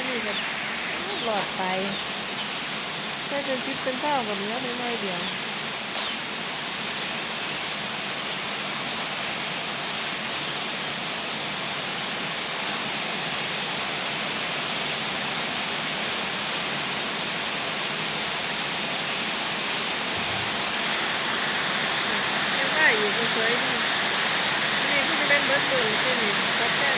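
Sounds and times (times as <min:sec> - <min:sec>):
heavy rain hissing: 0:00.0 - 0:26.9.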